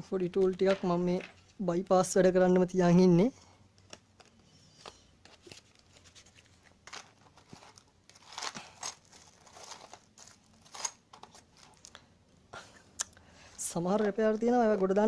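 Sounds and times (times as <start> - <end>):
packaging crinkling and rustling: 3.8 - 12.0.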